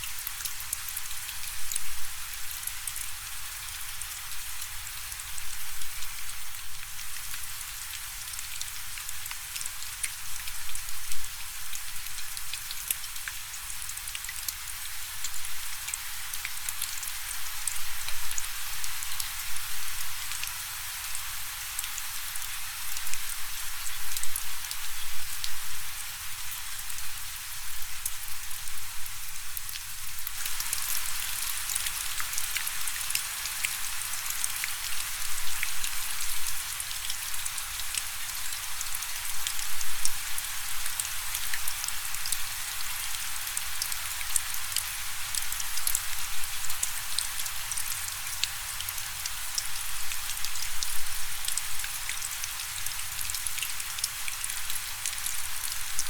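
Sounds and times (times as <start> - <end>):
raindrops ticking on a surface: 0.0 - 56.0
rain hissing: 29.9 - 51.8.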